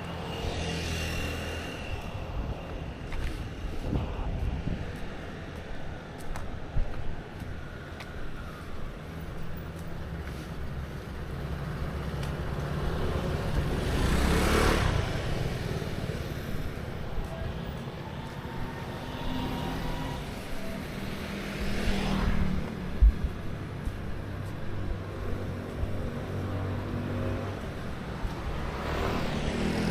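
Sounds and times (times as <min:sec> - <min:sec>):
low rumble of traffic: 0:00.0 - 0:29.9
vehicles passing: 0:00.0 - 0:29.9.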